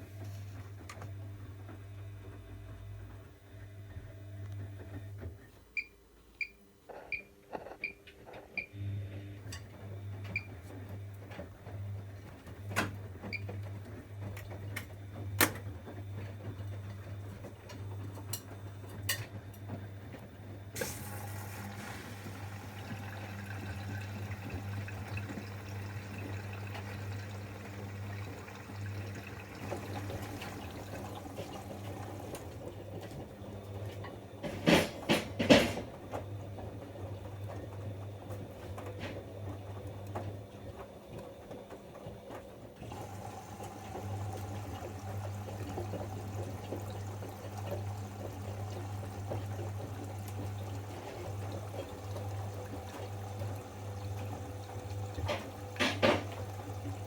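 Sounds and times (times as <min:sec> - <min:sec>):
water rushing into washing machine: 0:09.2 - 0:57.0.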